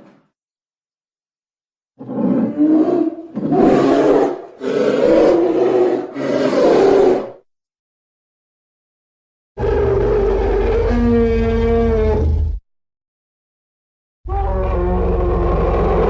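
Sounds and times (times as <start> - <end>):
growling monster roars: 2.0 - 7.4, 9.6 - 12.6, 14.3 - 16.0.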